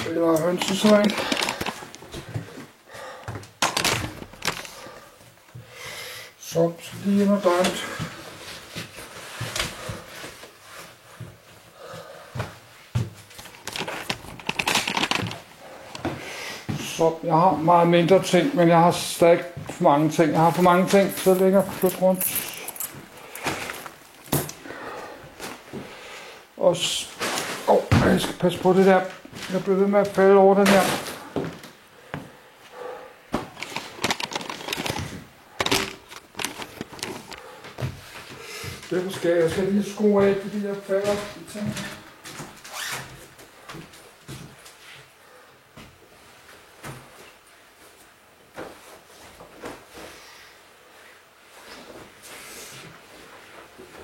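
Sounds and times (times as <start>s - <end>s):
crackly rustling: 0.0s - 2.8s, 3.5s - 5.5s, 12.7s - 26.1s, 33.4s - 44.8s
object being handled clicking and knocking: 0.3s - 2.2s, 3.4s - 4.8s, 13.3s - 16.2s, 33.4s - 37.4s.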